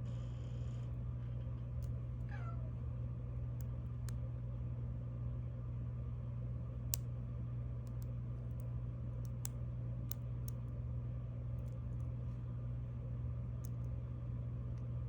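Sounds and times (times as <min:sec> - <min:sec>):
steady low hum: 0:00.0 - 0:15.0
cat meowing: 0:02.3 - 0:02.8.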